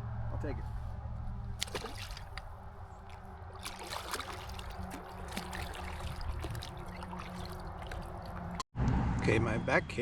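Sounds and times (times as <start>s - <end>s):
low wind rumble: 0.0s - 10.0s
small water splashes: 0.6s - 8.6s
trickling drips: 1.6s - 8.6s.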